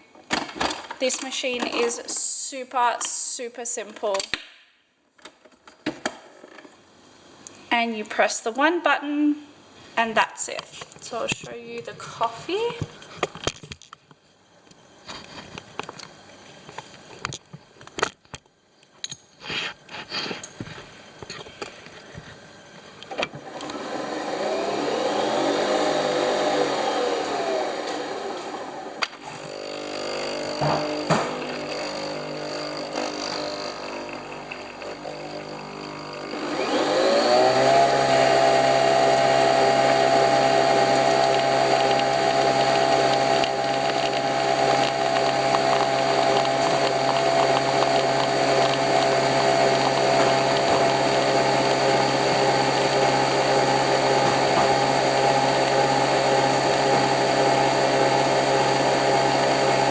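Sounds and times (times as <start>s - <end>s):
capsule machine whirring hum: 19.5s - 59.9s.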